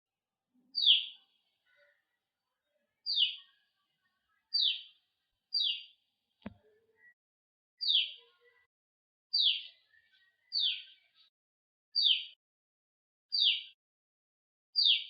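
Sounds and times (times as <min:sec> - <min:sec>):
sparrow chirping: 0:00.7 - 0:02.1, 0:02.7 - 0:03.6, 0:04.5 - 0:06.0, 0:07.8 - 0:08.6, 0:09.3 - 0:11.2, 0:12.0 - 0:12.4, 0:13.3 - 0:13.8, 0:14.8 - 0:15.0.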